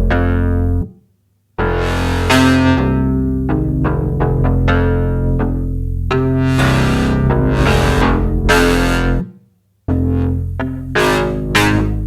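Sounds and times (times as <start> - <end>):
electronic music: 1.6 - 3.2, 6.1 - 9.2, 11.0 - 12.0.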